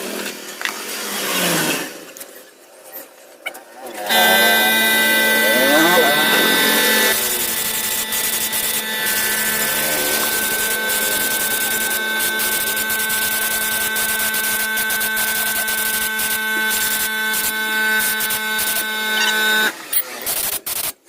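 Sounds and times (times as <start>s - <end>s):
power tool whining: 4.1s - 20.9s.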